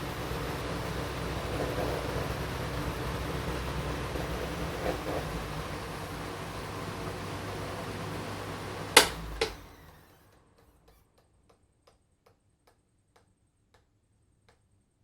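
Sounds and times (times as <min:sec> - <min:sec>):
electric fan running: 0:00.0 - 0:10.9
fan switch clicks: 0:08.9 - 0:09.7.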